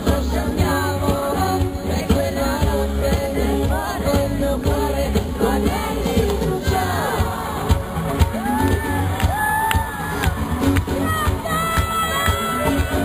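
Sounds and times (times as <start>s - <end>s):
person singing: 0.0s - 10.2s
pop song played by live band: 0.0s - 13.0s.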